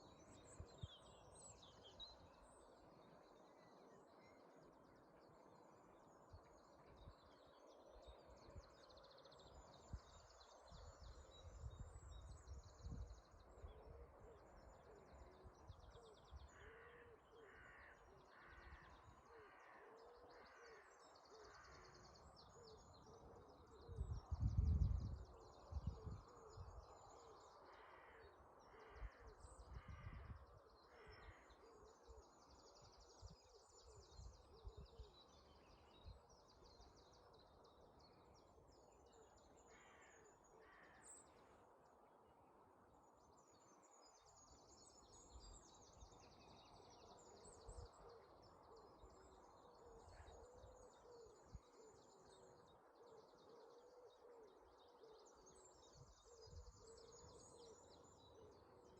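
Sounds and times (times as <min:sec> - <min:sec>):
songbirds trilling and chirping: 0:00.0 - 0:58.9
lower repeated bird calls: 0:12.7 - 0:42.1, 0:42.7 - 0:58.9.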